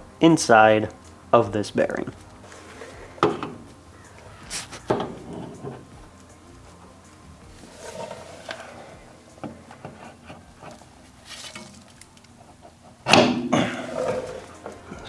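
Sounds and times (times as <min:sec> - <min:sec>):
small clicks and rubbing: 0:02.1 - 0:13.1.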